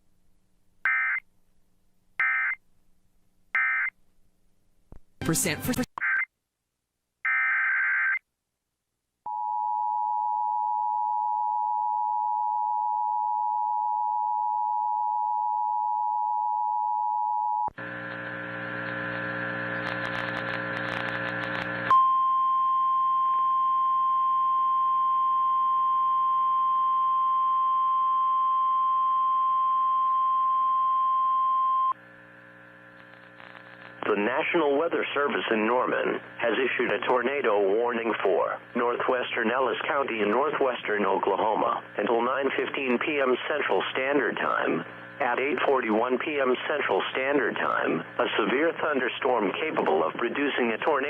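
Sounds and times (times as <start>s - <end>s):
harsh crackling buzz: 17.8s - 21.9s, 32.0s - 34.3s.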